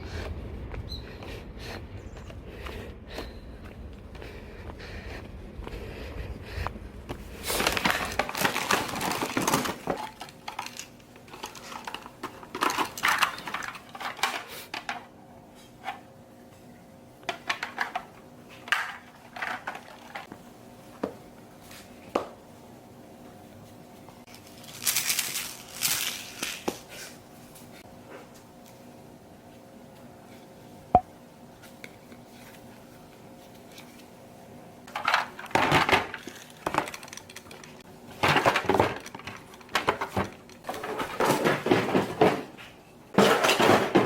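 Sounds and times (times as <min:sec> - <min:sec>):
faint steady hum: 0:00.0 - 0:41.6
objects clattering and clicking: 0:07.5 - 0:15.1, 0:17.2 - 0:20.3, 0:34.9 - 0:44.0.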